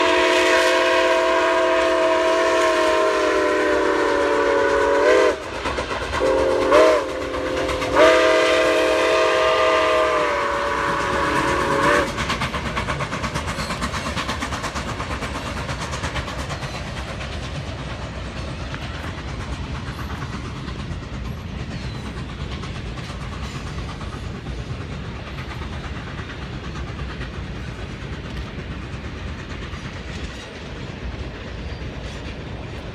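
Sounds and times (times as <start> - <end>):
steam locomotive chime whistle: 0.0 - 5.6, 6.2 - 12.2
train wheels clattering over rails: 0.0 - 32.9.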